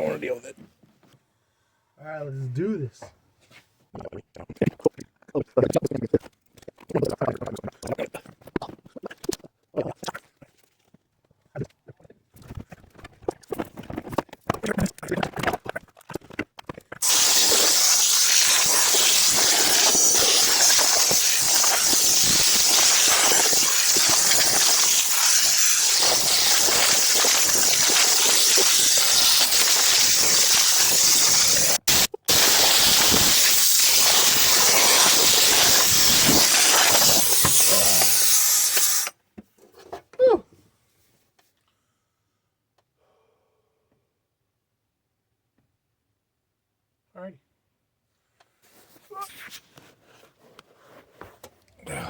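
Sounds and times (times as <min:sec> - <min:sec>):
compressed air blow gun blasting: 0:17.0 - 0:39.1.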